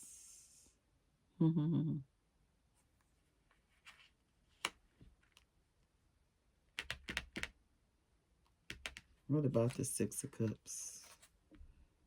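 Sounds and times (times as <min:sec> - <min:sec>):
person humming: 0:01.4 - 0:02.0
cards rustling on a table: 0:10.9 - 0:11.4.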